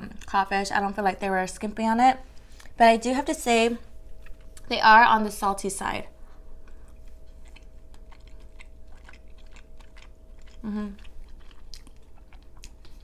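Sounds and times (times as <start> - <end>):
wet chewing sounds: 3.9 - 4.7, 6.2 - 13.0
person humming: 10.6 - 11.0.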